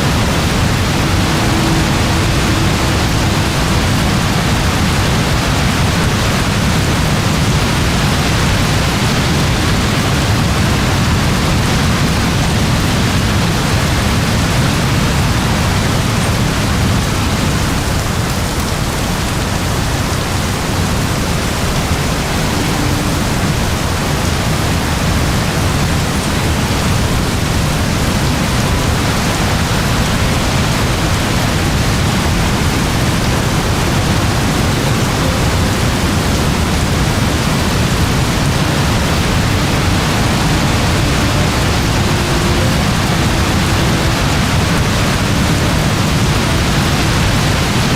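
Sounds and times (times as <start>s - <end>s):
deep low rumble: 0.0s - 8.2s
heavy rain pouring: 0.0s - 47.9s.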